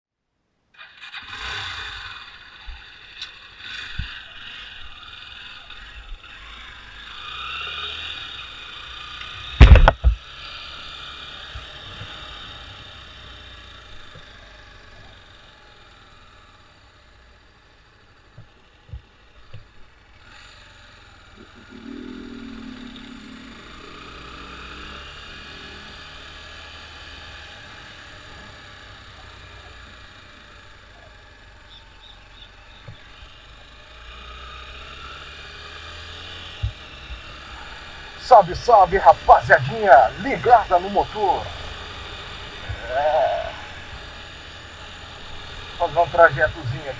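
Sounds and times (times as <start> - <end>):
engine running steadily: 1.0 - 46.9.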